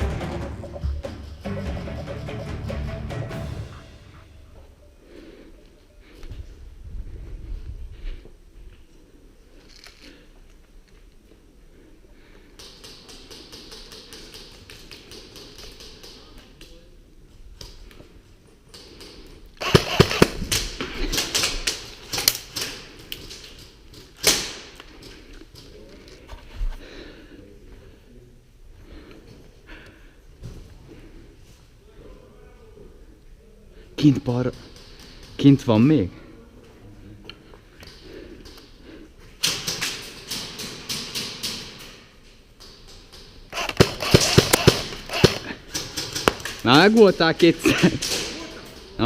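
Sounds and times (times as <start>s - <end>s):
airsoft gunfire: 19.6s - 21.5s, 43.5s - 46.5s.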